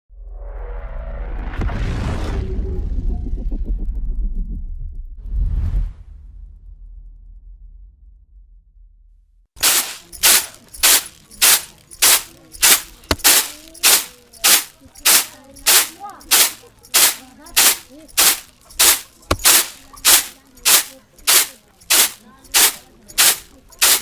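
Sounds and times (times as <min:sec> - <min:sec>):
broom sweeping concrete: 0:09.6 - 0:24.0.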